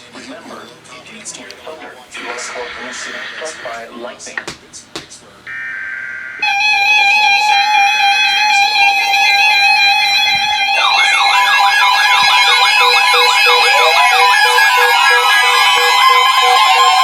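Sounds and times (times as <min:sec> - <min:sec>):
beeping tone: 0:05.5 - 0:17.0
shrill electronic alert tone: 0:05.5 - 0:17.0
wavering siren-like alarm: 0:05.5 - 0:17.0.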